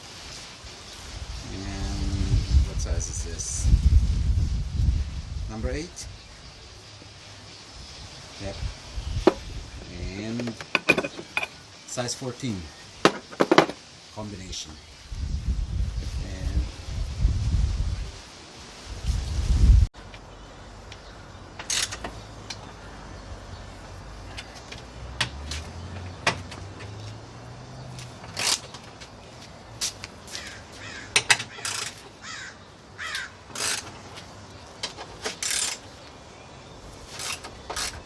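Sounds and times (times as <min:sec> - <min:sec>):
hand tools clinking: 0:10.4 - 0:11.6
bird cawing: 0:30.3 - 0:33.5.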